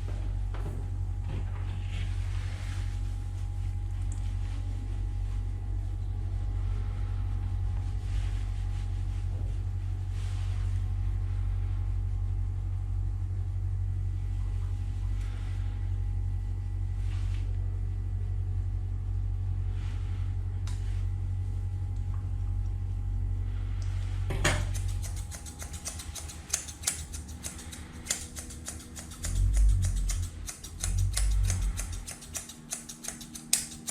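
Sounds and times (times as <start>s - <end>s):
electric clipper humming: 24.6s - 33.9s
clipper brushing through fur: 24.7s - 33.9s.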